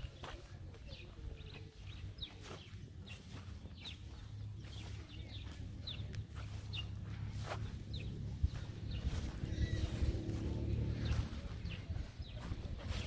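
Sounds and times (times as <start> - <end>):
birds chirping: 0.0 - 13.0
steady low rumble: 4.0 - 13.0.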